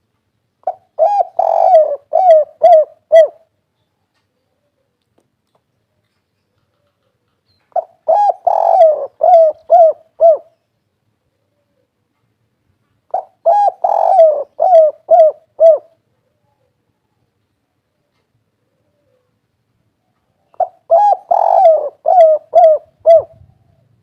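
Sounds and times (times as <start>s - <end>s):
dove cooing: 0.6s - 3.5s, 6.7s - 10.6s, 13.1s - 17.0s, 18.6s - 19.4s, 20.4s - 24.0s.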